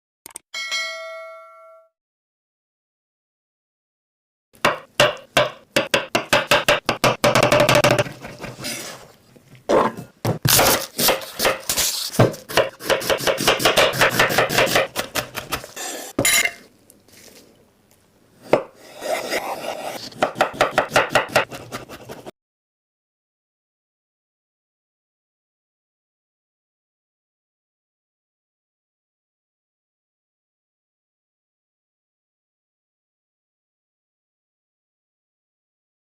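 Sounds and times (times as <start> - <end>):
knife chopping on cutting board: 4.6 - 8.8, 9.7 - 16.4, 18.4 - 22.3.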